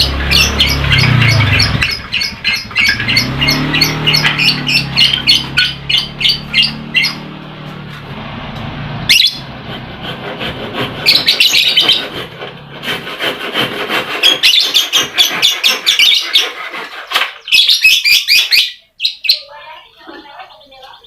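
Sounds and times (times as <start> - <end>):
lovebirds chirping: 0.0 - 8.0, 9.0 - 9.6, 11.0 - 12.4, 14.2 - 21.0.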